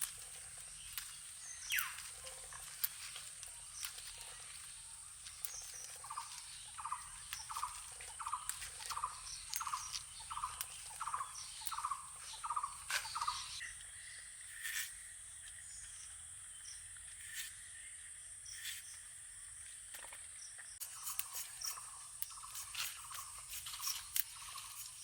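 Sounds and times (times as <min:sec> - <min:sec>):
bird calling: 0:00.0 - 0:14.1.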